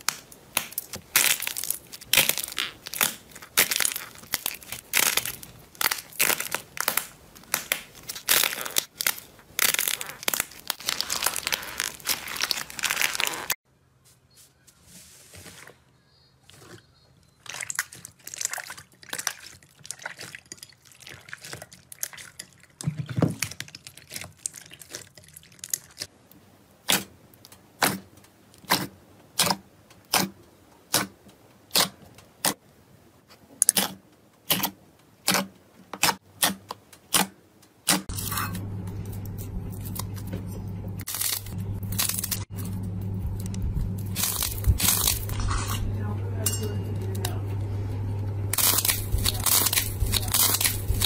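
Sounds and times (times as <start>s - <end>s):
slime squishing and crackling: 0.0s - 13.6s, 17.4s - 26.1s, 41.0s - 42.6s, 43.3s - 45.9s, 48.6s - 51.0s
steady low hum: 38.1s - 51.0s.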